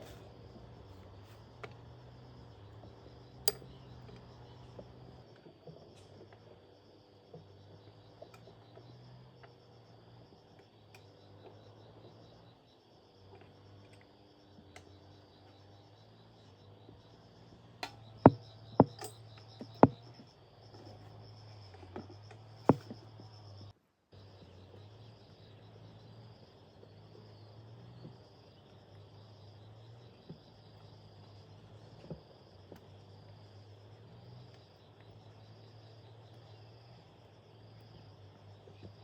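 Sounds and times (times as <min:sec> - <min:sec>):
insects chirping: 0:00.0 - 0:39.0
sharp knocks: 0:18.2 - 0:20.1.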